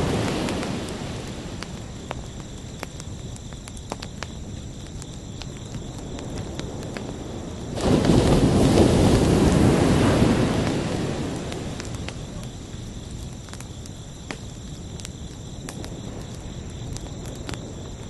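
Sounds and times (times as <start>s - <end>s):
surf washing: 0.0s - 1.7s, 7.7s - 12.6s
crickets chirping: 0.0s - 18.0s
ocean waves breaking: 7.8s - 12.4s.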